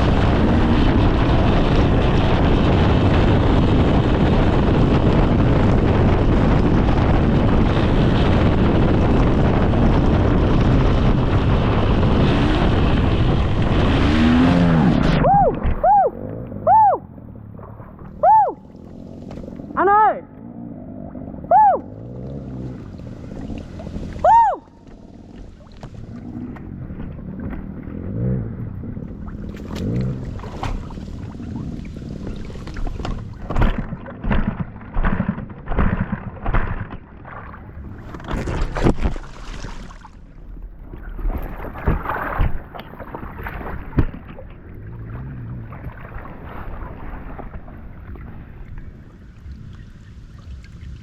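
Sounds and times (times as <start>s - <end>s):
dirt bike engine revving: 0.0s - 15.2s, 26.0s - 32.3s
knocks and splashes in mud: 20.4s - 49.8s.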